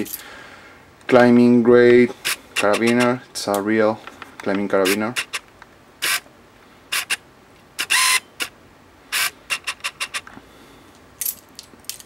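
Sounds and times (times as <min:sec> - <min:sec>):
keys clinking on carabiner: 0:11.2 - 0:12.0.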